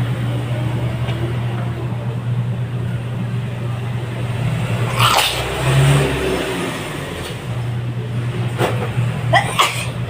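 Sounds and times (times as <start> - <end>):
steady low hum: 0.0 - 10.0
person sneezing: 4.9 - 5.5.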